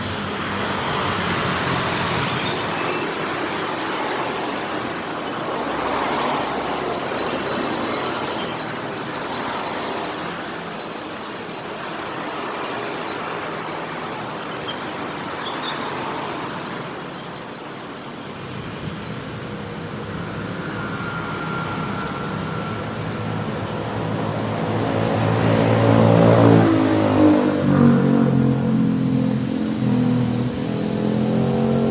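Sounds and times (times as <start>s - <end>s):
city street traffic: 0.0s - 31.9s
motorcycles passing: 0.0s - 31.9s
vehicle accelerating: 18.6s - 31.9s.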